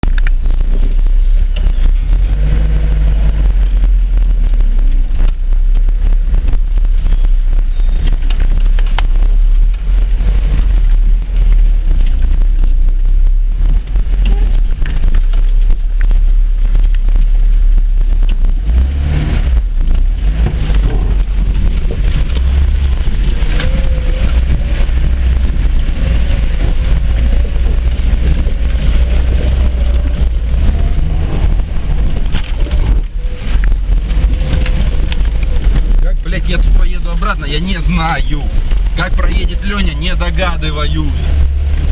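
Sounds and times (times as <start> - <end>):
car engine low rumble: 0.0 - 41.9
wind buffeting microphone: 0.0 - 41.9.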